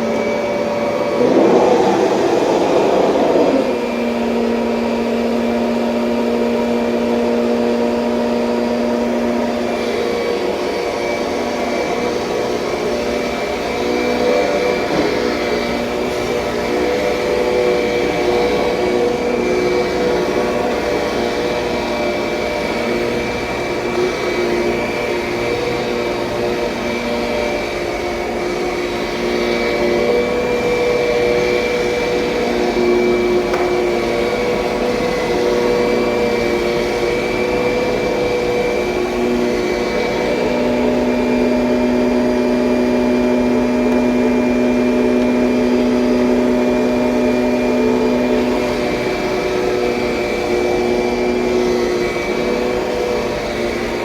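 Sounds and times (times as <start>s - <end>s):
vacuum cleaner running: 0.0s - 54.0s
low hum: 1.2s - 4.4s.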